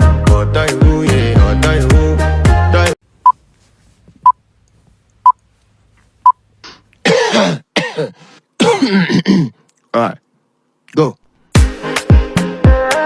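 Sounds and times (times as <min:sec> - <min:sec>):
cough-like voice bursts: 0:07.0 - 0:09.6.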